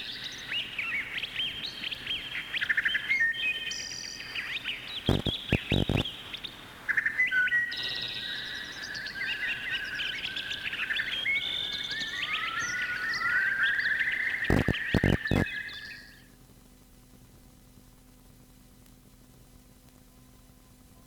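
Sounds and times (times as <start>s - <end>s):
songbirds chirping: 0.0s - 16.4s
sharp clicks: 5.1s - 6.0s, 14.5s - 15.5s.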